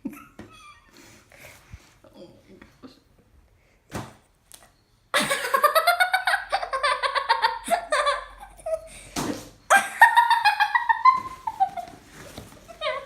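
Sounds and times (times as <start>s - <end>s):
child giggling: 5.2s - 9.1s, 9.7s - 12.0s, 12.7s - 13.0s.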